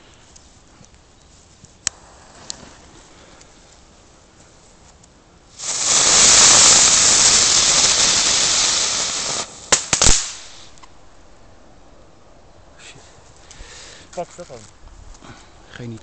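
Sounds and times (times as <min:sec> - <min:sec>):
firework spinner hissing: 0:05.5 - 0:10.9
firework cracks: 0:05.5 - 0:11.2.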